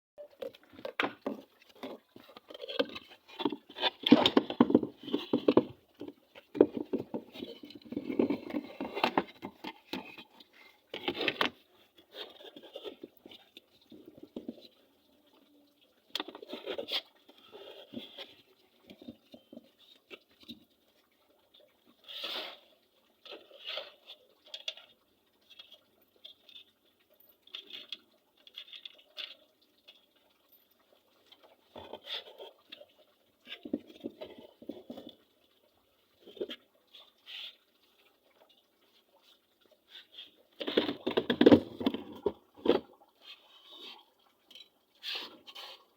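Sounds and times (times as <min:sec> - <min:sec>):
clicks and scrapes of handling: 0:00.4 - 0:14.8, 0:16.1 - 0:20.6, 0:39.9 - 0:45.9.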